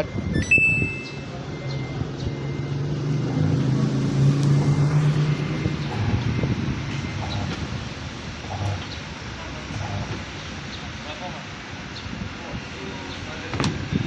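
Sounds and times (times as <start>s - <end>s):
short high beep: 0.0s - 2.8s.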